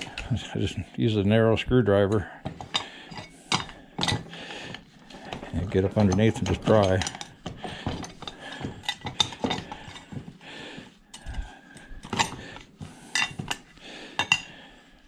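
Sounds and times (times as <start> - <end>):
screwdriver clicking and scraping metal: 2.5 - 10.4, 11.1 - 14.5.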